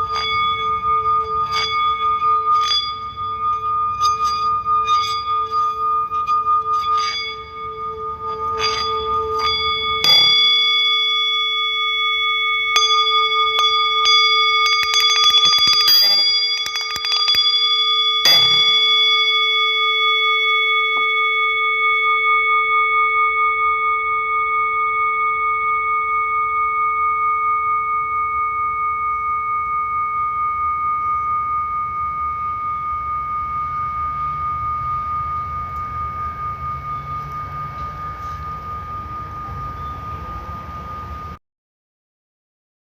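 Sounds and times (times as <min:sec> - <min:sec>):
metal singing bowls struck: 0:00.0 - 0:41.4
small chime-like strikes: 0:00.0 - 0:41.4.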